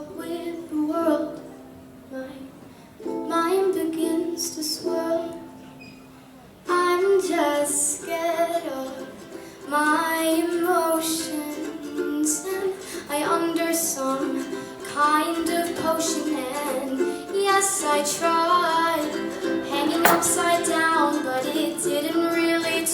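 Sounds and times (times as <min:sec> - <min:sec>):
girl singing: 0:00.0 - 0:01.5, 0:02.1 - 0:05.4, 0:06.7 - 0:09.1, 0:09.7 - 0:19.0
plucked string instrument: 0:18.8 - 0:22.2.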